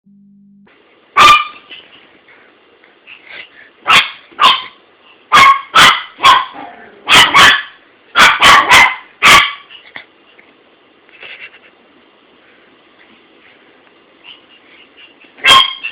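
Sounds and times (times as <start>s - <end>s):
dog barking sharply: 1.2s - 1.7s, 3.9s - 9.7s, 15.4s - 15.9s.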